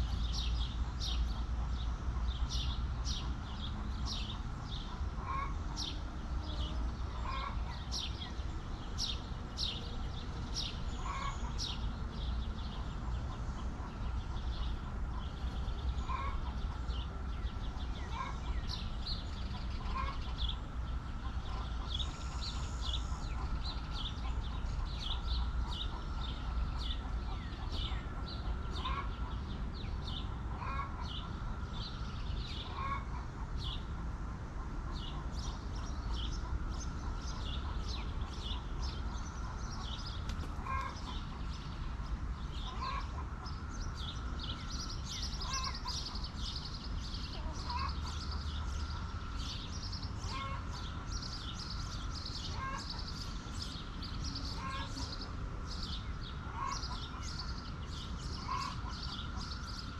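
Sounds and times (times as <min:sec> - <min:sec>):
chickens clucking: 0:10.8 - 0:31.6, 0:32.5 - 0:33.8, 0:34.6 - 0:44.3, 0:47.3 - 0:49.4, 0:50.1 - 0:53.2, 0:54.3 - 0:55.4, 0:56.4 - 0:59.7.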